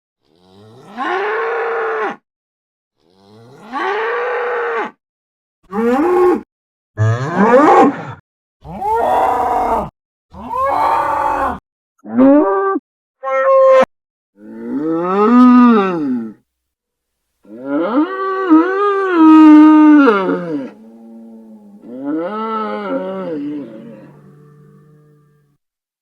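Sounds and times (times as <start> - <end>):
cartoon bull bellowing: 7.0 - 16.2, 17.5 - 25.6.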